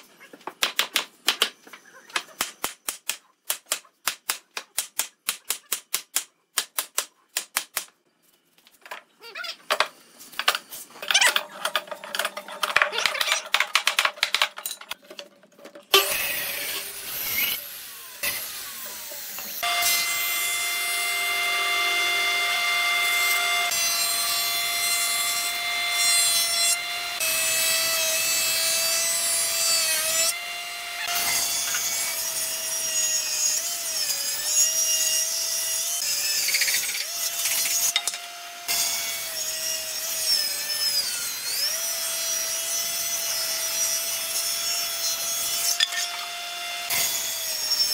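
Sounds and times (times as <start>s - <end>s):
power tool cutting wood: 15.9s - 47.9s.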